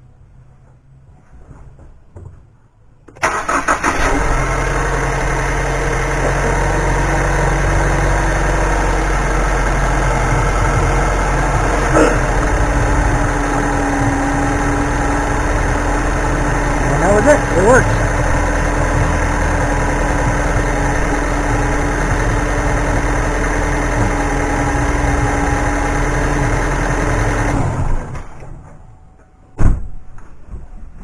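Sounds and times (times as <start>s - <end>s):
car engine cranking and idling: 3.0s - 29.6s.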